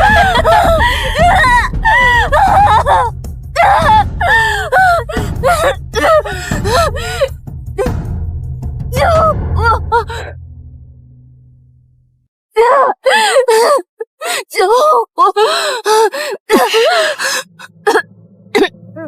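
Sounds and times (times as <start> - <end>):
woman gasping: 0.0 - 2.4, 4.0 - 7.9, 15.4 - 18.0
woman screaming in pain: 0.0 - 7.9, 9.0 - 10.3, 12.6 - 18.0.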